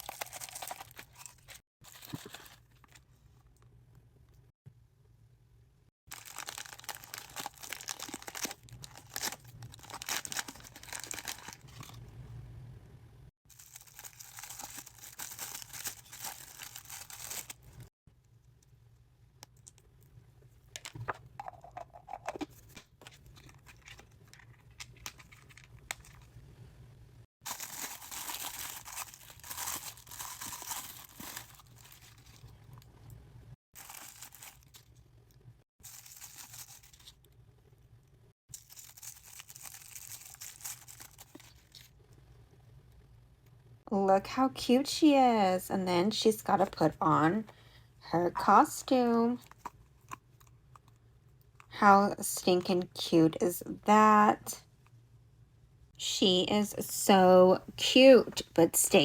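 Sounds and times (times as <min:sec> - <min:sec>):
plastic packaging rustling: 0:00.0 - 0:03.0, 0:06.1 - 0:12.0, 0:13.5 - 0:17.9, 0:27.4 - 0:32.9, 0:33.8 - 0:35.0, 0:35.8 - 0:37.2, 0:38.5 - 0:41.9.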